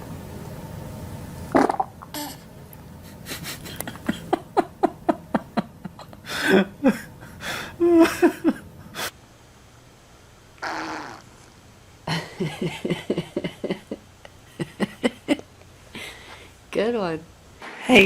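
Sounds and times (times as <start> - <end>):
short farts: 1.5 - 2.1.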